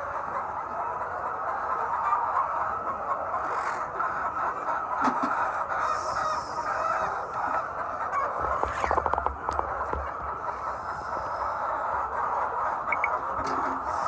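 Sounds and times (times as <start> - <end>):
hens clucking: 0.0 - 14.0.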